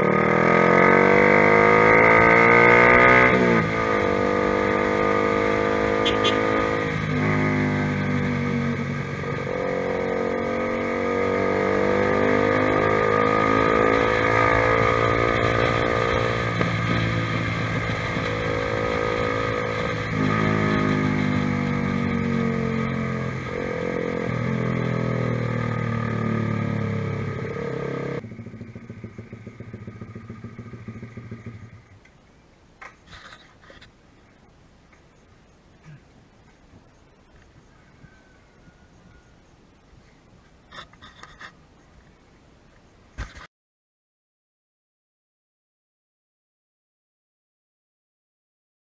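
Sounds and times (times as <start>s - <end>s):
motorcycle engine revving: 0.0s - 32.2s.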